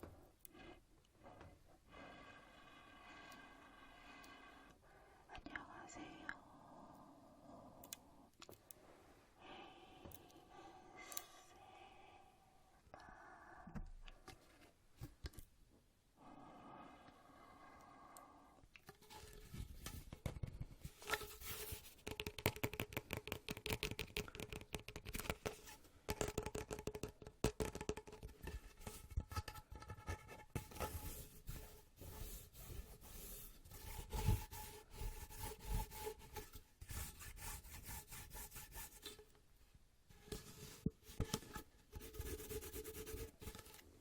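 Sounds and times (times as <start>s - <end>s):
fingertips tapping: 21.8s - 28.6s.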